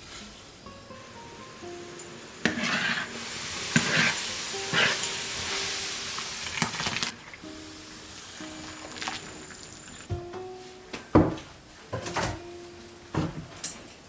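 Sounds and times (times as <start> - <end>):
stirring strokes in a pan: 0.0 - 0.6, 2.4 - 10.1
food sizzling in a pan: 0.0 - 10.1.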